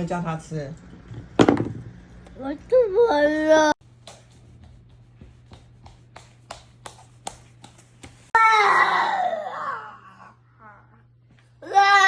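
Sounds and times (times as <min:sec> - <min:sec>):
toddler crying: 0:08.4 - 0:10.2, 0:11.6 - 0:12.0.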